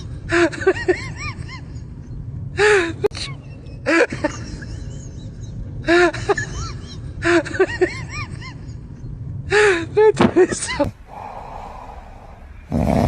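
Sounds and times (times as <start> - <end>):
low rumble: 0.0 - 10.1, 10.8 - 12.8
snoring snorts with whistling: 12.3 - 13.0.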